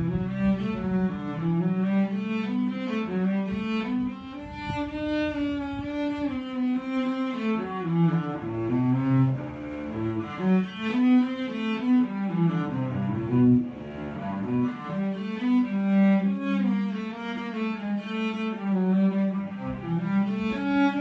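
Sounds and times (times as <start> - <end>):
solo cello playing: 0.0 - 21.0.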